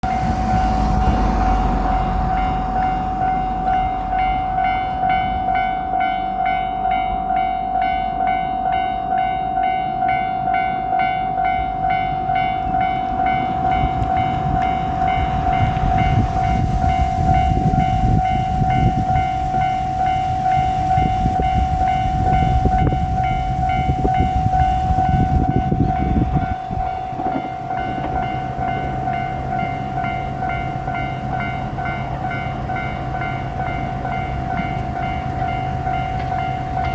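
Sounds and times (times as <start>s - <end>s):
level-crossing warning bell: 0.0s - 36.9s
train engines rumbling: 0.0s - 36.9s
wheels clattering over rail joints: 20.5s - 36.9s.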